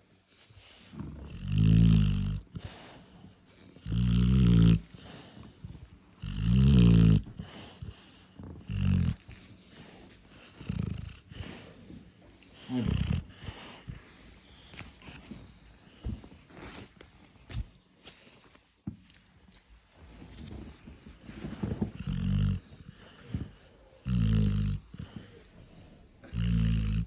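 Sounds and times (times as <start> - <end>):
dog snoring: 0.7 - 15.3, 20.6 - 27.0.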